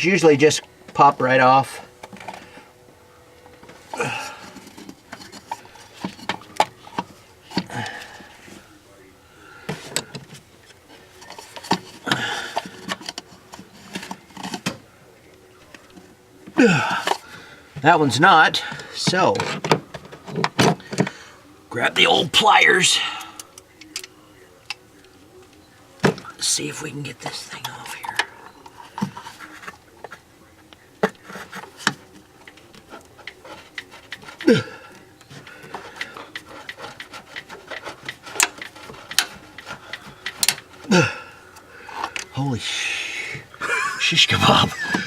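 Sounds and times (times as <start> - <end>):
plastic rotor clicking and knocking: 35.6 - 40.8.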